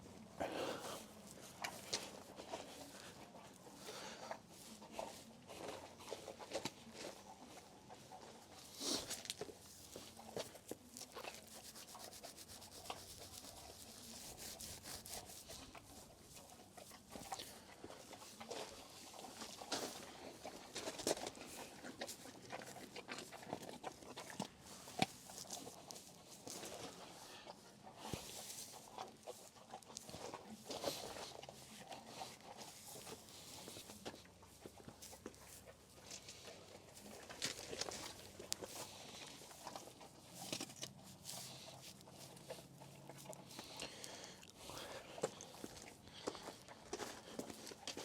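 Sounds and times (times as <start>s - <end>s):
rustling: 0.0s - 48.0s
faint quick scratching strokes: 11.3s - 15.7s
faint shuffling footsteps: 23.9s - 48.0s.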